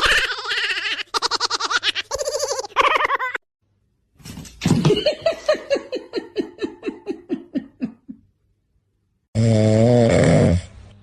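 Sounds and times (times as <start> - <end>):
person laughing: 1.3 - 3.4, 4.8 - 8.3.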